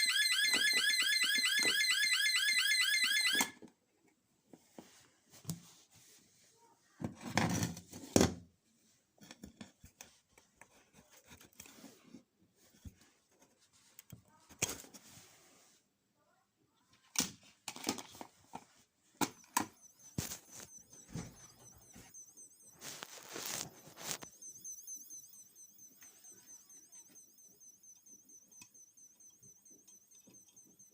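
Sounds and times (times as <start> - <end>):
faint high wavering electronic tone: 19.3 - 30.9.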